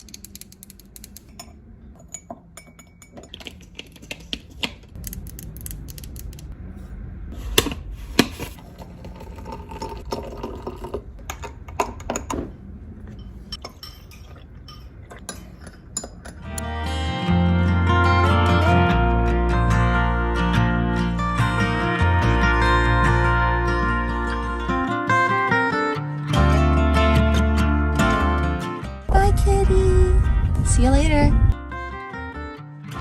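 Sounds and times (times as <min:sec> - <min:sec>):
dishes and cutlery clattering: 0:13.1 - 0:16.5.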